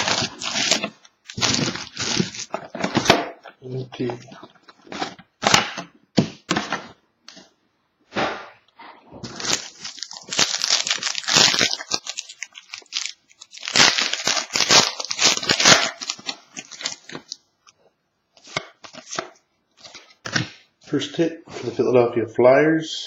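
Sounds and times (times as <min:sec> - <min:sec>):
plastic wrapping tearing and crinkling: 0:00.0 - 0:03.2, 0:09.2 - 0:17.4.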